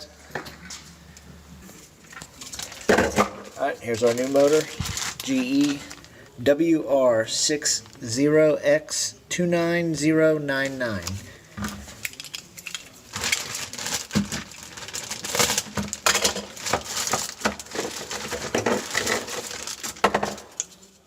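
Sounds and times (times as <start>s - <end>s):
crinkling and rustling: 1.6s - 6.4s, 7.7s - 8.1s, 10.6s - 21.0s.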